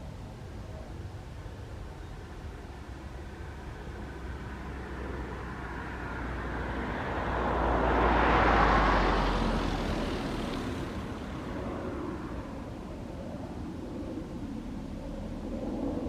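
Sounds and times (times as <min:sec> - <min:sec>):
steady low rumble: 0:00.0 - 0:16.0
vehicle passing by: 0:04.0 - 0:13.0.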